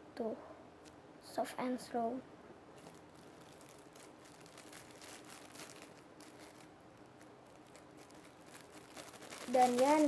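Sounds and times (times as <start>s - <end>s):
plastic crinkling and rustling: 2.8s - 10.0s.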